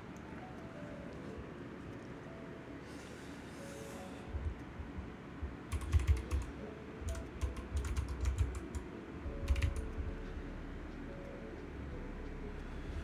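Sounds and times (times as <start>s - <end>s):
keyboard keystroke clicks: 5.7s - 10.0s.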